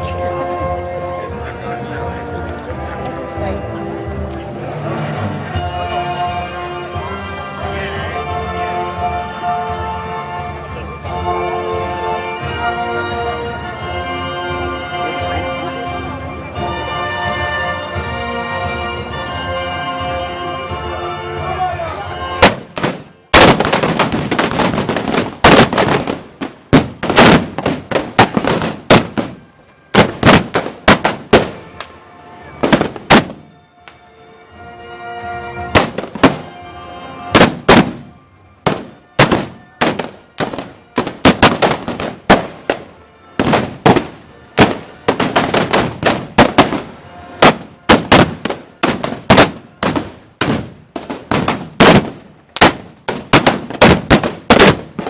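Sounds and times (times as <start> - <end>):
band music: 0.0 - 26.6, 27.6 - 52.1
black-powder guns firing: 22.4 - 31.9, 32.6 - 33.4, 35.8 - 36.5, 37.4 - 38.1, 38.7 - 55.0.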